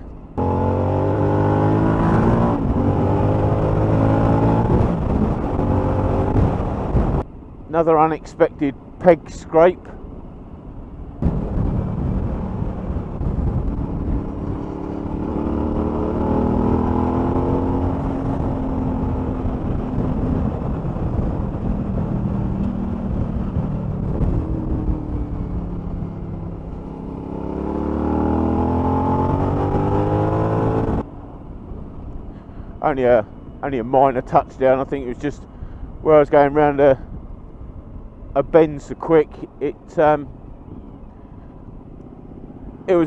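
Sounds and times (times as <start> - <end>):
wind noise: 0.0 - 7.9, 9.9 - 43.0
road noise: 0.0 - 43.0
motorcycle engine accelerating: 0.3 - 7.2, 11.1 - 32.2, 40.6 - 43.0.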